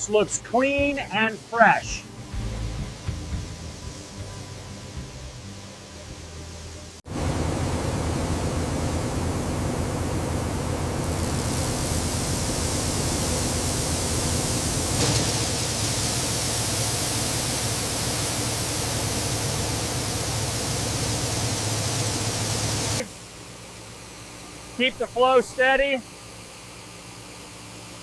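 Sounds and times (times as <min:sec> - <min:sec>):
low machinery hum: 0:00.0 - 0:28.0
corn kernels pouring: 0:11.0 - 0:23.0.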